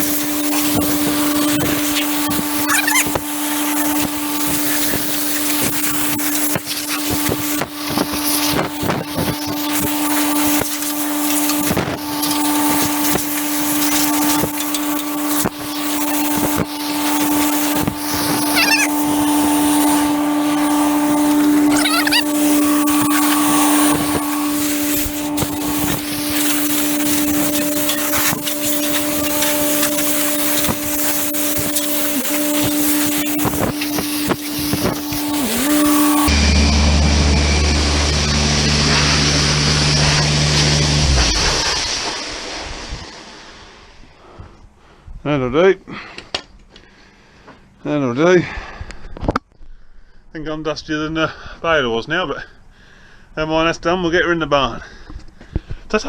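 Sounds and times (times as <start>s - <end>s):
compressed air blow gun hissing: 0.0s - 36.4s
air compressor humming: 0.0s - 44.6s.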